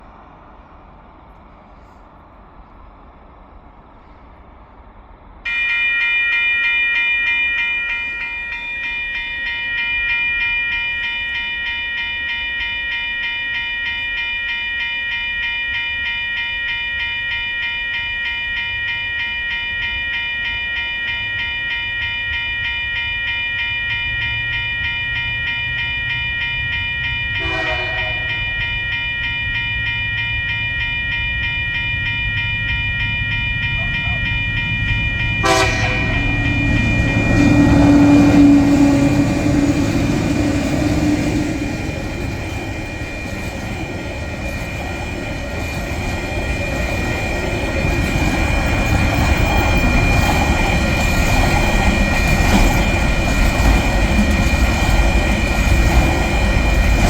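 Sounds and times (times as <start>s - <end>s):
level crossing bells ringing: 5.5s - 57.0s
train horn toot: 27.4s - 28.5s, 35.3s - 41.3s
diesel locomotive rumble: 32.6s - 57.0s.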